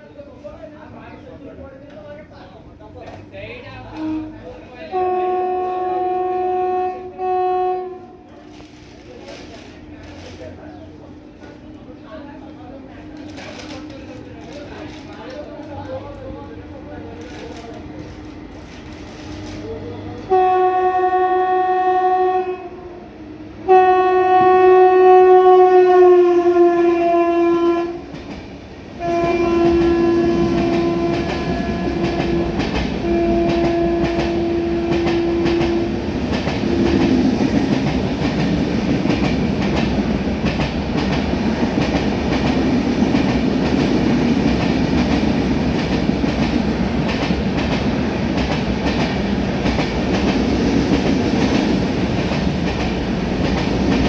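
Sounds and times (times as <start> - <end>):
train coaches rumbling and clattering: 0.0 - 54.0
train horn blasts: 3.9 - 8.3, 20.2 - 23.0, 23.6 - 28.1, 29.0 - 37.2.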